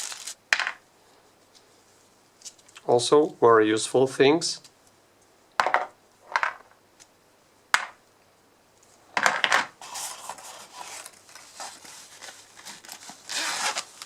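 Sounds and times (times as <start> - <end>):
packaging rustling: 0.0 - 0.7, 9.8 - 14.0.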